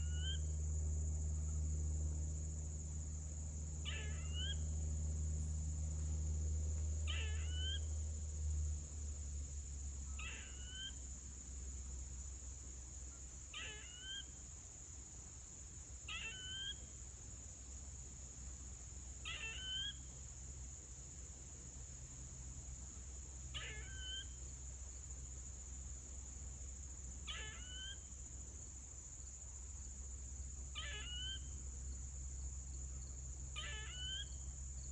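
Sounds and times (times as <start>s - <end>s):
squirrel screeching: 3.8s - 4.6s, 7.1s - 7.9s, 10.2s - 11.0s, 13.5s - 14.3s, 16.1s - 16.8s, 19.2s - 20.0s, 23.6s - 24.4s, 27.3s - 28.0s, 30.8s - 31.5s, 33.6s - 34.3s.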